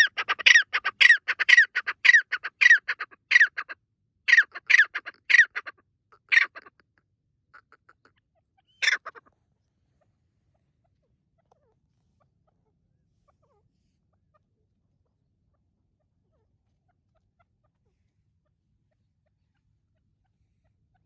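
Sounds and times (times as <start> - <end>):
francolin calling: 0.0 - 6.6, 8.6 - 9.2.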